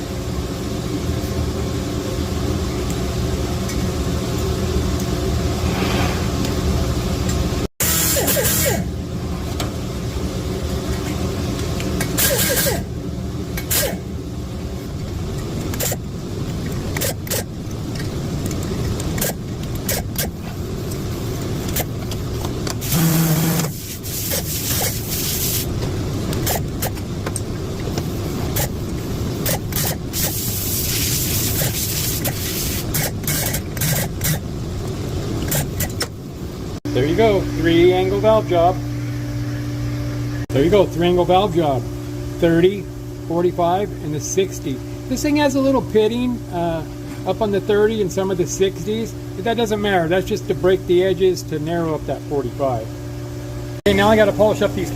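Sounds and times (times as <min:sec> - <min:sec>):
valve seat grinder motor humming: 0:07.8 - 0:08.9, 0:22.8 - 0:25.1.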